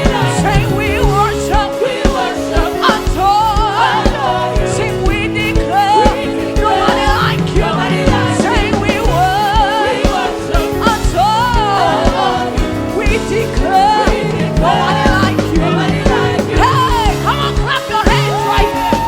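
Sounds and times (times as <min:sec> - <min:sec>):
band with drums and bass: 0:00.0 - 0:19.0
voices singing gospel: 0:00.0 - 0:19.0.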